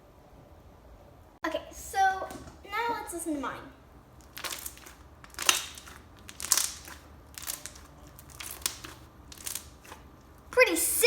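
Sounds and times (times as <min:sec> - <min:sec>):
slime popping: 0:04.2 - 0:10.2.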